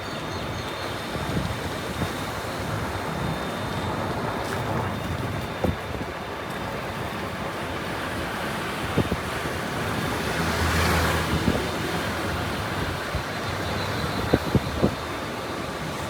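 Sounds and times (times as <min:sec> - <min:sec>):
wind and road noise: 0:00.0 - 0:16.0
passing vehicle: 0:07.8 - 0:16.0.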